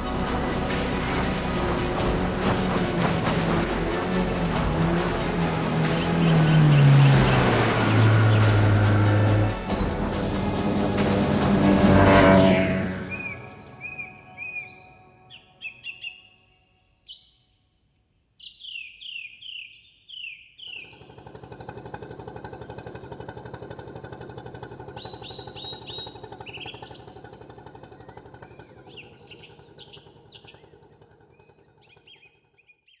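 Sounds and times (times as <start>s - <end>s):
low pulsing drone: 0.0s - 15.7s
small birds chirping and trilling: 18.2s - 22.0s, 24.6s - 33.0s.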